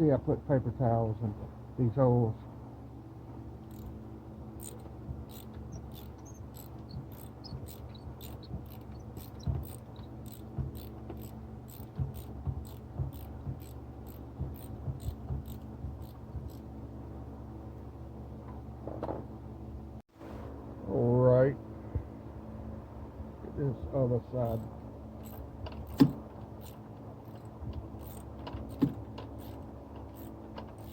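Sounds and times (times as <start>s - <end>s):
steady low hum: 0.0s - 30.9s
dull knocks: 4.9s - 16.6s.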